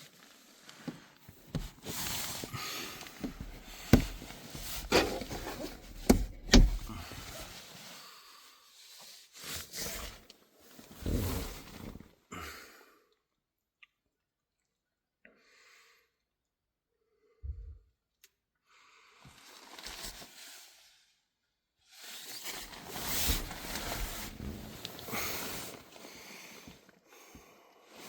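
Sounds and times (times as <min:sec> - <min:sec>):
rustling and handling noise: 0:00.0 - 0:07.8, 0:22.4 - 0:26.2
sharp knocks: 0:03.2 - 0:04.2.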